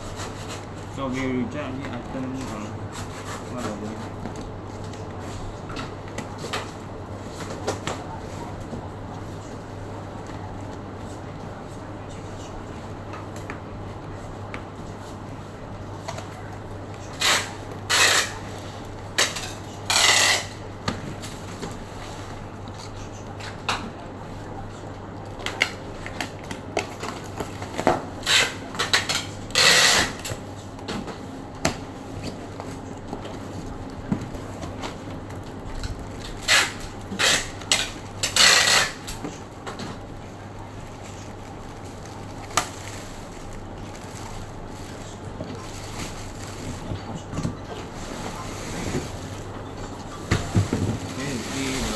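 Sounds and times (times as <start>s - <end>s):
rustling and clattering: 32.1s - 51.9s.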